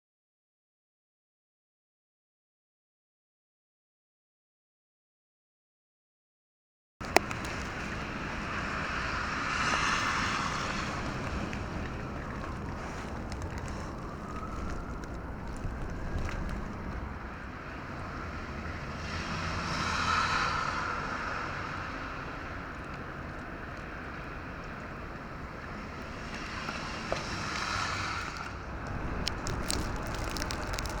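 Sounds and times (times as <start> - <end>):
tyres hissing through wet snow: 7.0 - 31.0.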